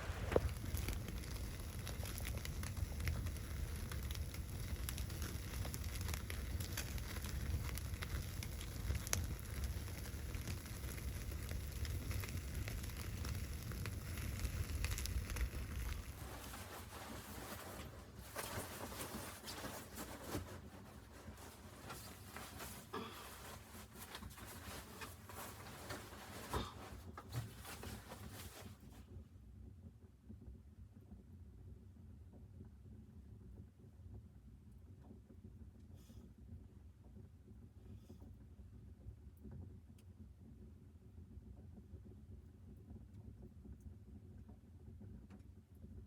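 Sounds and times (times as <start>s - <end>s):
wood fire crackling: 0.0s - 29.0s.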